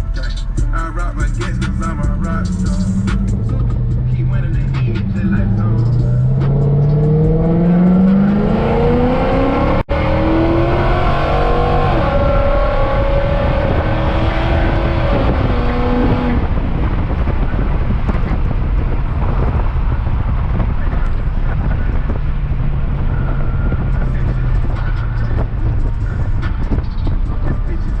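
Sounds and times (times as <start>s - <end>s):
road and tyre noise: 0.0s - 28.0s
car engine accelerating hard: 1.2s - 28.0s.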